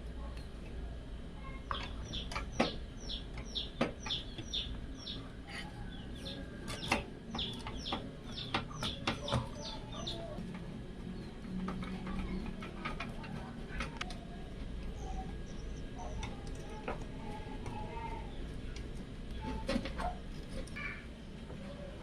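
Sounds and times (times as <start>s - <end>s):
low steady hum: 0.0s - 22.0s
birds chirping: 1.4s - 22.0s
sharp clicks and knocks: 6.7s - 9.8s.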